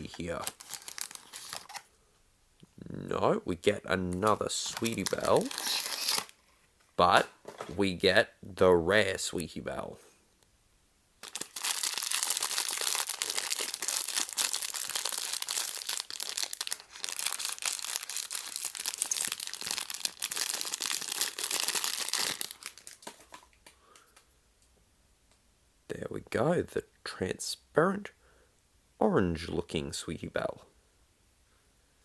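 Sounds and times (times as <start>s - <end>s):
plastic packet crinkling and tearing: 0.0s - 1.9s, 4.0s - 6.4s, 11.2s - 24.1s.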